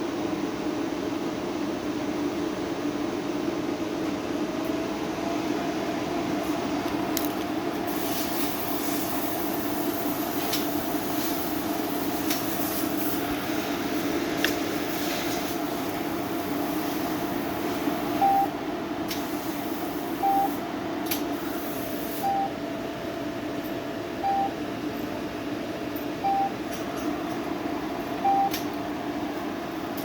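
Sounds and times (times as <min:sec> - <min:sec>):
machine humming: 0:04.7 - 0:30.0
short beeps: 0:18.2 - 0:18.5, 0:20.2 - 0:20.6, 0:22.2 - 0:22.6, 0:24.2 - 0:24.6, 0:26.2 - 0:26.6, 0:28.2 - 0:28.6.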